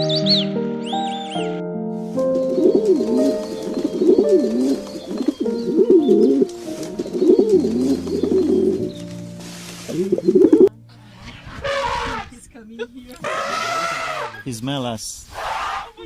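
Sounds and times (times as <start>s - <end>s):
background music: 0.0s - 14.5s
pigeons cooing: 2.4s - 9.0s, 9.9s - 10.7s.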